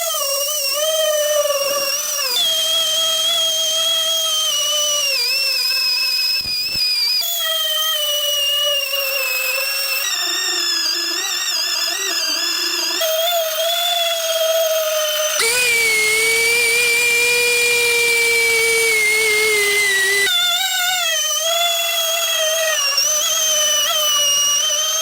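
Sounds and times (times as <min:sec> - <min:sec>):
electric power tool whining: 0:00.0 - 0:25.0.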